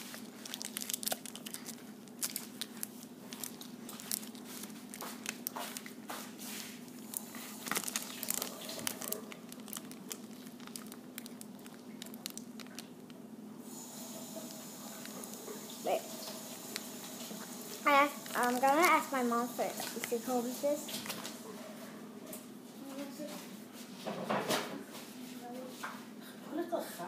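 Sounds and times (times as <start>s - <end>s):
candy wrapper crinkling: 0.0s - 6.1s, 6.9s - 13.2s, 17.8s - 21.3s
faint steady hum: 0.0s - 23.8s.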